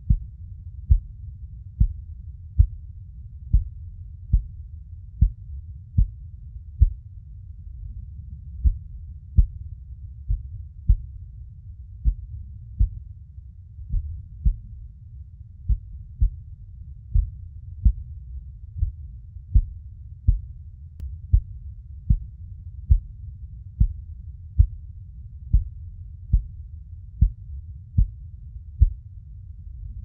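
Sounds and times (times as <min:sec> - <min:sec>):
heartbeat thumps: 0:00.0 - 0:02.8, 0:03.4 - 0:04.6, 0:05.2 - 0:06.2, 0:06.8 - 0:07.0, 0:08.5 - 0:11.3, 0:12.0 - 0:13.1, 0:13.8 - 0:14.8, 0:15.6 - 0:16.5, 0:17.1 - 0:20.6, 0:21.3 - 0:23.2, 0:23.8 - 0:24.8, 0:25.5 - 0:26.6, 0:27.2 - 0:28.2, 0:28.8 - 0:29.0
constant low rumble: 0:00.0 - 0:30.0.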